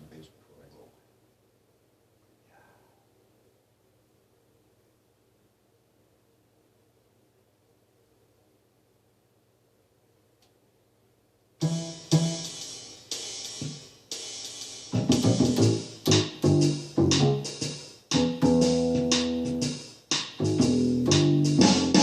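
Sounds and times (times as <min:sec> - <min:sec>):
bass guitar notes: 0:11.6 - 0:12.5, 0:14.9 - 0:19.8, 0:20.4 - 0:22.0
drum beat: 0:11.6 - 0:22.0.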